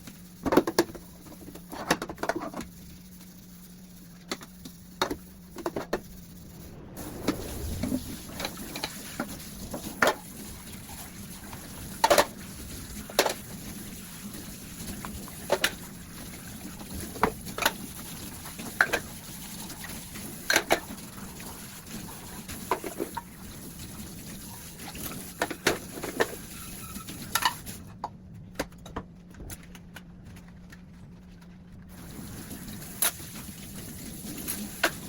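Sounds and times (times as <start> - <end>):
tap water running: 8.0 - 27.8, 31.9 - 35.0.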